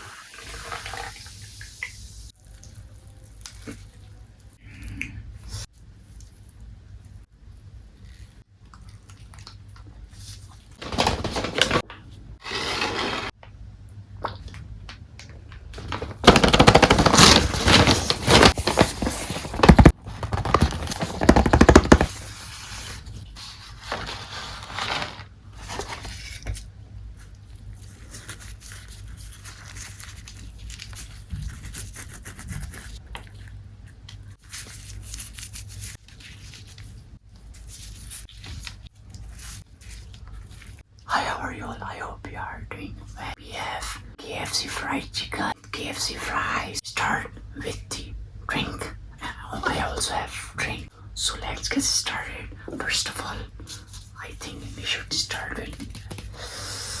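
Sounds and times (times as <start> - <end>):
scraping and rubbing: 10.8 - 13.4, 15.8 - 26.2
food crackling: 15.7 - 22.5
rustling: 15.8 - 26.4.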